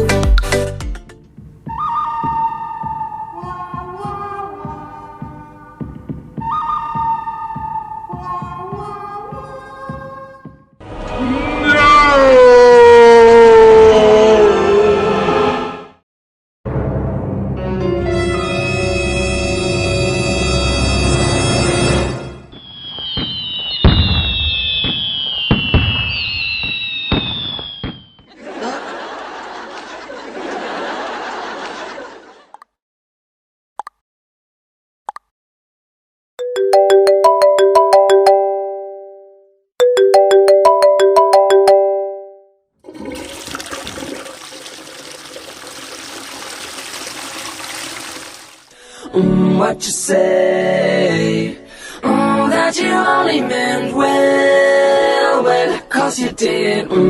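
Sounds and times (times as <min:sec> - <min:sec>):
fireworks bangs: 0:22.5 - 0:28.3
fireworks whistling: 0:22.5 - 0:28.3
fireworks crackling: 0:22.6 - 0:28.2
flowing water rushing: 0:42.9 - 0:48.8.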